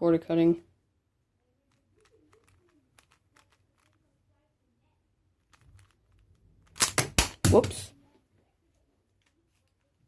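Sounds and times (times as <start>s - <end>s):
puzzle cube layers clicking: 1.7s - 4.1s.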